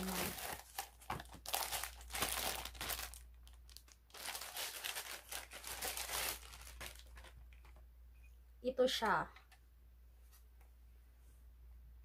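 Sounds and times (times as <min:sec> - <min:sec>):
packaging crinkling: 0:00.0 - 0:07.8.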